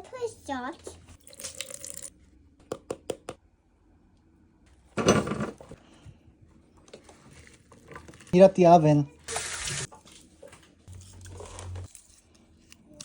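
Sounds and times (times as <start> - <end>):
dishes clattering: 5.0 - 5.6.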